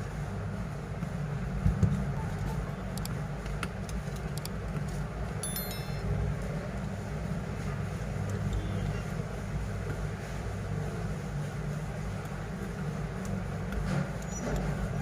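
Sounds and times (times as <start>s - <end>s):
metallic clink: 5.4s - 6.0s.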